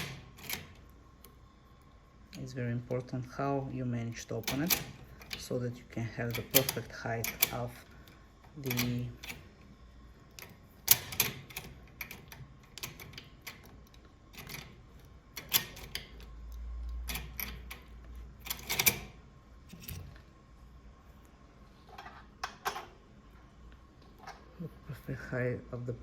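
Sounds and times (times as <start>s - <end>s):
sharp metal clicks of lock: 0.0s - 0.8s, 4.4s - 5.4s, 6.3s - 7.7s, 10.4s - 16.3s, 16.9s - 20.0s.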